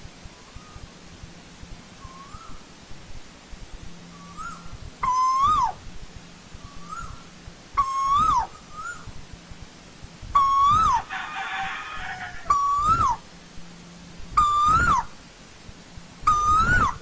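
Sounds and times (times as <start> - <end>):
koel calling: 4.3 - 5.8, 7.8 - 9.0, 10.4 - 13.2, 14.4 - 15.1, 16.3 - 17.0.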